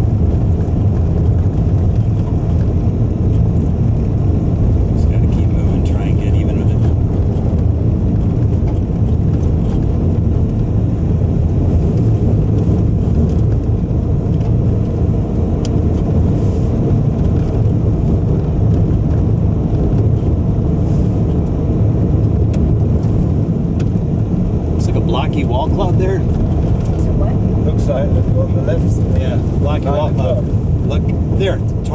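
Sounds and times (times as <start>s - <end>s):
car road and engine rumble: 0.0s - 31.9s.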